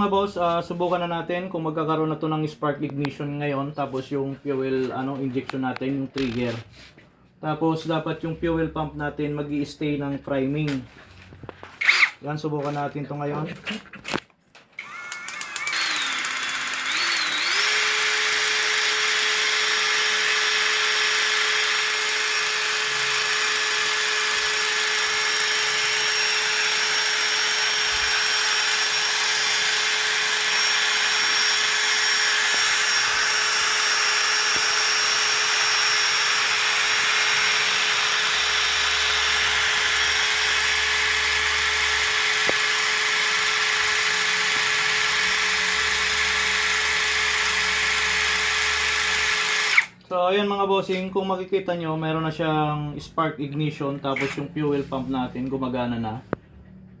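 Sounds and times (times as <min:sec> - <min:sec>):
small electric motor whining: 0:11.8 - 0:12.2, 0:14.8 - 0:50.0.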